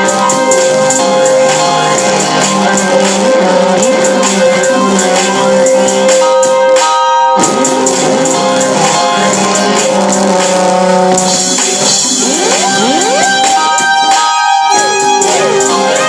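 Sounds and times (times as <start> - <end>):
fast high percussion beat: 0.0 - 16.0
sustained pitched tones: 0.0 - 16.0
rising pitch sweeps: 7.1 - 16.0.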